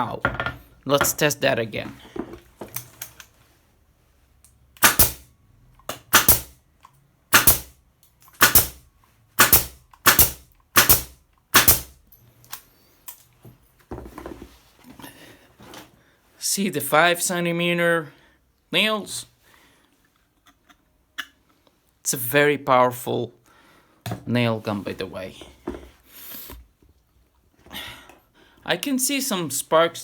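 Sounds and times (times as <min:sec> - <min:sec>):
pneumatic nail gun firing: 0:04.8 - 0:05.3, 0:06.1 - 0:06.6, 0:07.3 - 0:07.8, 0:08.4 - 0:08.8, 0:09.4 - 0:12.0.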